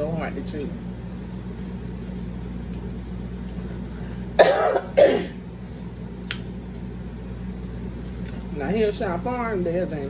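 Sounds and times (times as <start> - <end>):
person coughing: 4.4 - 5.4.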